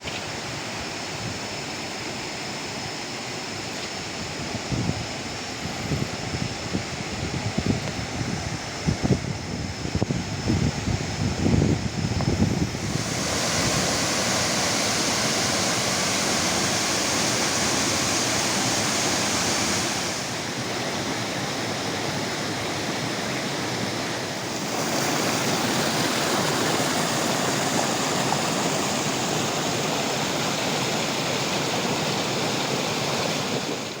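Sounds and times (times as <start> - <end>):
wind buffeting microphone: 4.2 - 20.3
waterfall rushing: 12.4 - 34.0.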